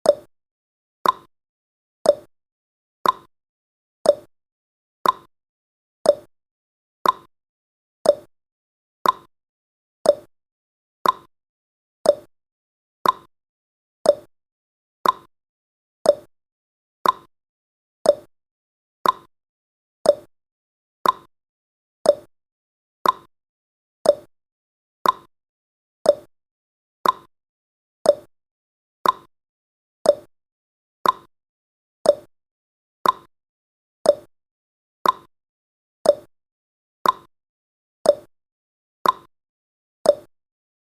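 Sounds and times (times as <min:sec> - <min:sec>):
clock ticking: 0:03.0 - 0:03.3, 0:05.0 - 0:05.3, 0:07.0 - 0:07.3, 0:09.0 - 0:09.3, 0:11.0 - 0:11.3, 0:13.0 - 0:13.3, 0:15.0 - 0:15.3, 0:16.1 - 0:16.3, 0:17.0 - 0:17.3, 0:18.1 - 0:18.3, 0:19.0 - 0:19.3, 0:21.0 - 0:21.3, 0:22.1 - 0:22.3, 0:23.0 - 0:23.3, 0:24.0 - 0:24.3, 0:25.0 - 0:25.3, 0:26.1 - 0:26.3, 0:27.0 - 0:27.3, 0:28.1 - 0:28.3, 0:29.0 - 0:29.3, 0:30.1 - 0:30.3, 0:31.0 - 0:31.3, 0:32.1 - 0:32.3, 0:33.0 - 0:33.3, 0:34.1 - 0:34.3, 0:35.0 - 0:35.3, 0:36.1 - 0:36.3, 0:37.0 - 0:37.3, 0:38.1 - 0:38.3, 0:39.0 - 0:39.3, 0:40.1 - 0:40.3.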